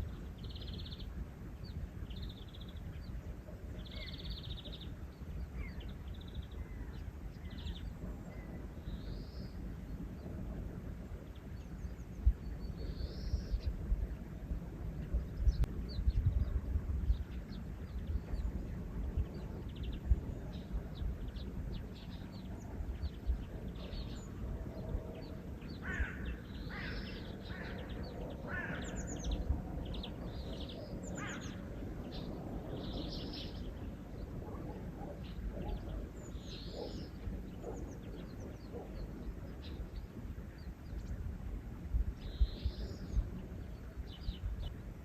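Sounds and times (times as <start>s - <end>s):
small birds chirping: 0.0s - 45.0s
steady low rumble: 0.0s - 45.0s
harsh bird calls: 25.7s - 33.8s.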